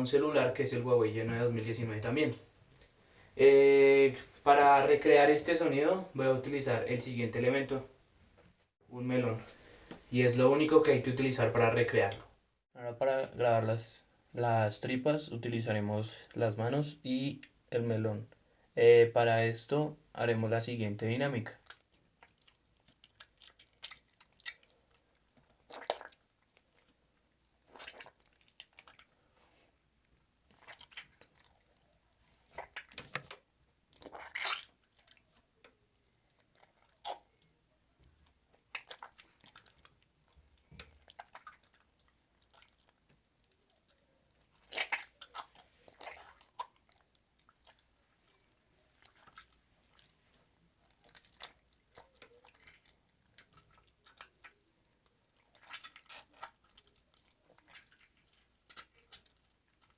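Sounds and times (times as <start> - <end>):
wet squelches and crunches: 21.4 - 29.3, 30.4 - 37.5, 38.1 - 59.9.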